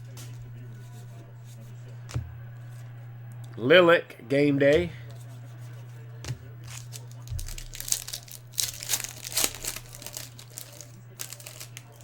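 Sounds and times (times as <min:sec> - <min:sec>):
steady low hum: 0:00.0 - 0:12.0
wrapper tearing and crinkling: 0:06.6 - 0:12.0.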